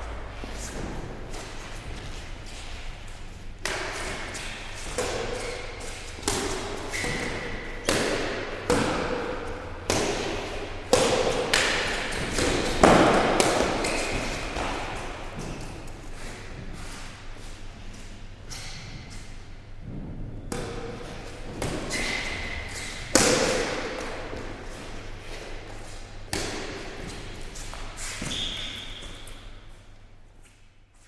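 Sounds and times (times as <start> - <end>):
racquets hitting shuttlecock: 3.1 - 16.0, 20.5 - 24.6, 25.9 - 29.4.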